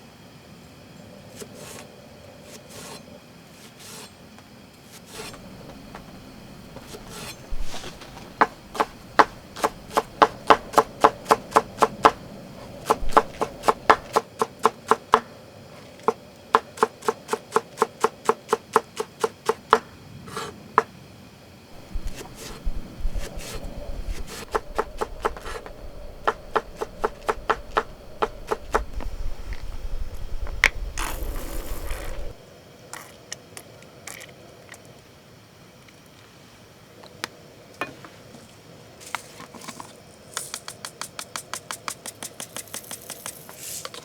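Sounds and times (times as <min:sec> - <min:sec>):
knife chopping on cutting board: 0:06.8 - 0:12.2, 0:12.8 - 0:15.2, 0:21.8 - 0:29.1.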